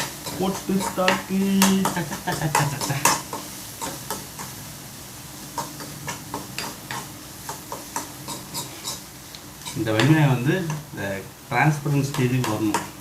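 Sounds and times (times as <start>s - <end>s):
utensil scraping a pan: 0.0s - 4.5s, 5.6s - 10.8s
light sizzle: 0.0s - 13.0s.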